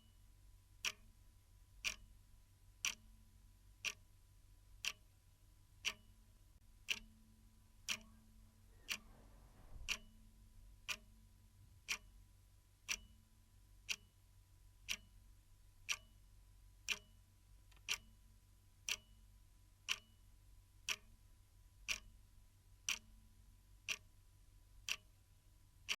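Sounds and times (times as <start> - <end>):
faint low hum: 0.0 - 26.0
clock ticking: 0.8 - 1.2, 1.8 - 2.2, 2.8 - 4.2, 4.8 - 5.2, 5.8 - 22.2, 22.8 - 24.1, 24.8 - 25.2.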